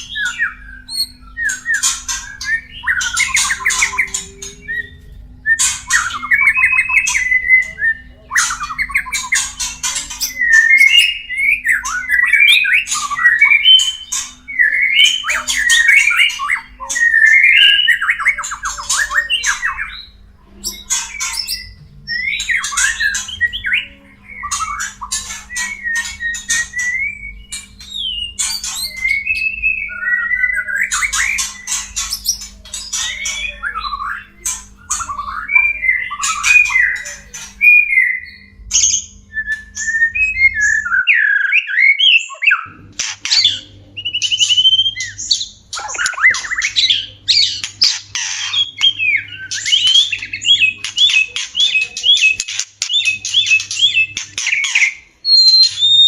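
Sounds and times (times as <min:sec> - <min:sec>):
low steady hum: 0:00.0 - 0:41.0
bird whistling and chattering: 0:00.0 - 0:56.0.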